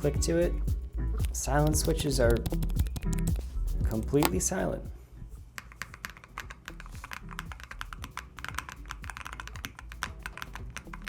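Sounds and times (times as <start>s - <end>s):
mechanical keyboard typing: 1.7s - 4.4s, 5.6s - 11.0s.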